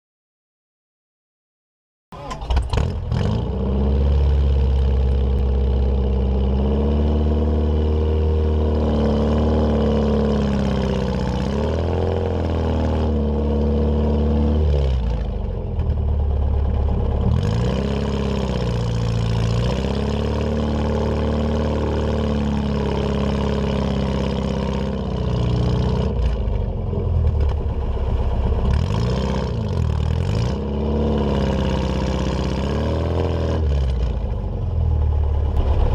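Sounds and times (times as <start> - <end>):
engine revving under load: 2.2 - 16.0, 17.1 - 35.9.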